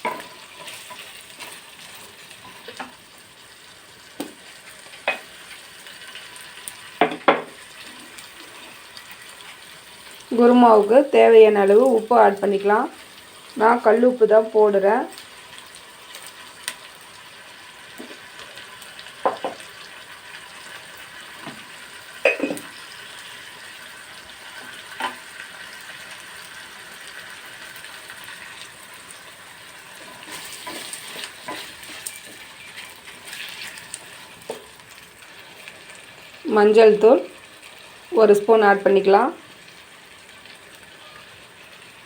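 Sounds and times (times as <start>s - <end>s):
vegetables sizzling in oil: 0.0s - 42.0s
spoon knocking against pan: 7.0s - 7.6s, 19.2s - 19.6s, 22.3s - 22.7s.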